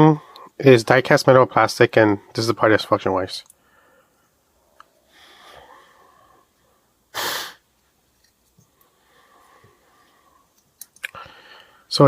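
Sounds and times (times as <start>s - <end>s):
person breath burst: 7.1s - 7.6s.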